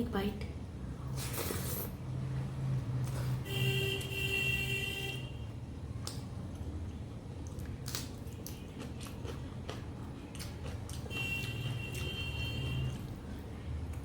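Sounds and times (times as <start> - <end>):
chewing with wet mouth clicks: 6.0 - 14.0.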